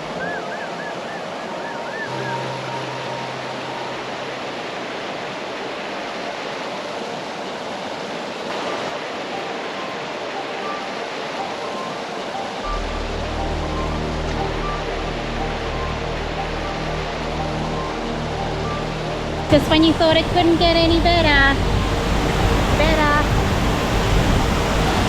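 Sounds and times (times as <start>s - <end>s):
faint musical notes: 0.0s - 25.0s
waterfall rushing: 0.0s - 25.0s
wavering tone: 9.4s - 25.0s.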